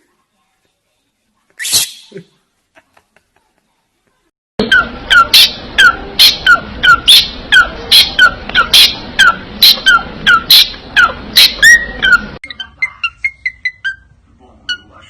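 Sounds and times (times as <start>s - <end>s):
parrot squeaking calls: 1.6s - 2.2s, 4.6s - 15.0s.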